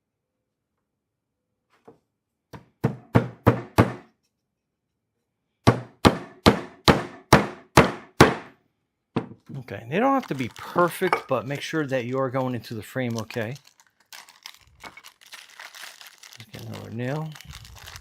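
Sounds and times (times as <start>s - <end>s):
hammer striking nail into wood: 2.6s - 4.1s, 5.6s - 8.5s.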